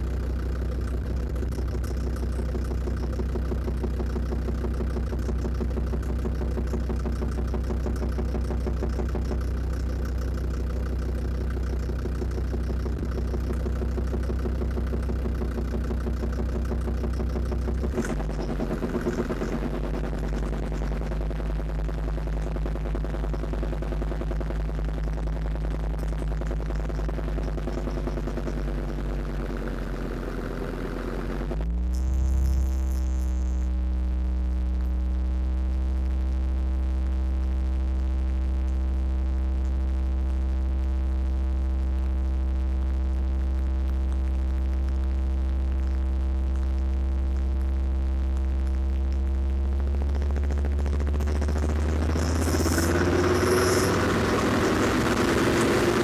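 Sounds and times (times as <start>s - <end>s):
diesel engine idling and revving: 0.0s - 34.2s, 48.8s - 56.0s.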